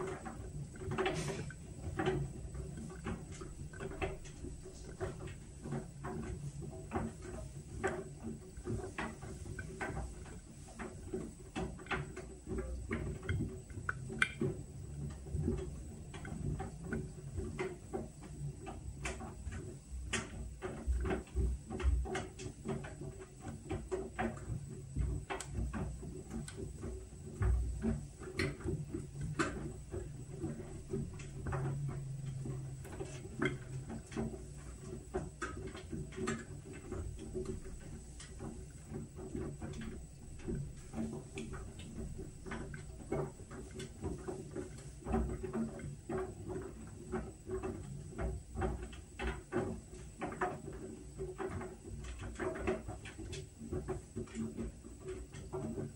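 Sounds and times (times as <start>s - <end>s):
light clicks and taps: 0.0s - 55.9s
washing machine motor hum: 0.0s - 55.9s.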